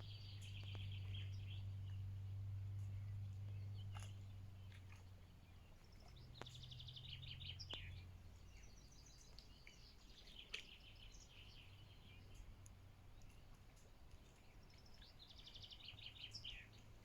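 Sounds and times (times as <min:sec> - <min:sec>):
low steady hum: 0:00.0 - 0:17.0
songbirds singing: 0:00.0 - 0:17.0.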